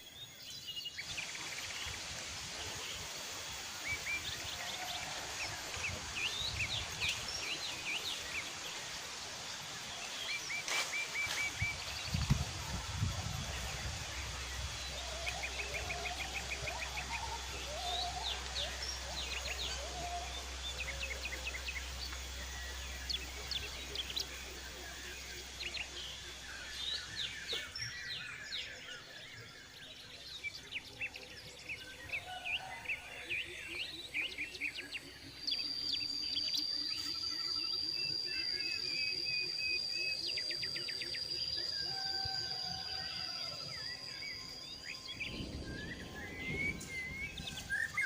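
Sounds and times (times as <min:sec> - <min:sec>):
birds calling and chirping: 0:00.0 - 0:48.0
steady high whine: 0:01.3 - 0:30.1.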